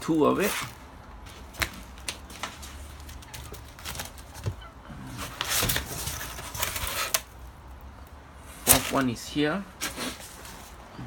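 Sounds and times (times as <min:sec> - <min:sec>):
cardboard and plastic wrapping handled: 0:00.3 - 0:04.6, 0:05.2 - 0:07.3.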